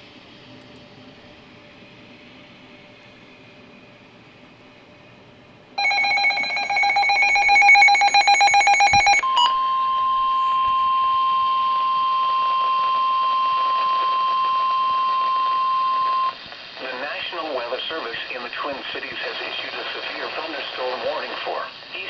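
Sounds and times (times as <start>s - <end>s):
rapidly pulsing electronic beep: 5.8s - 10.4s
steady warning alarm tone: 5.8s - 16.4s.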